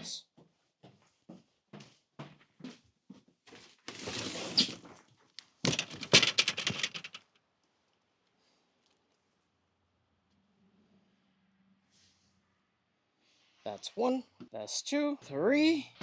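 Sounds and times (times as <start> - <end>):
short rushing scrape: 3.9 - 4.8
boxes and gear clattering: 3.9 - 4.9, 5.7 - 7.2.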